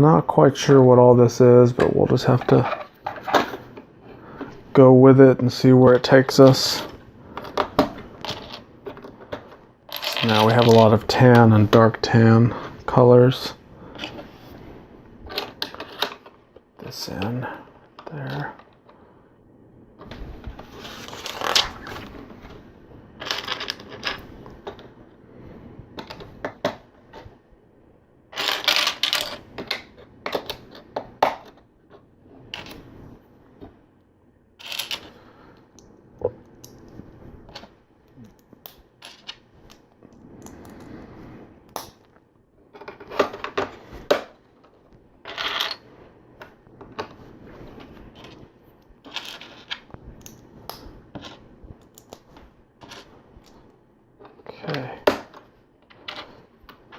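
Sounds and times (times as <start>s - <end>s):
plastic bricks clattering: 7.4s - 11.0s, 28.3s - 31.5s, 34.6s - 35.2s.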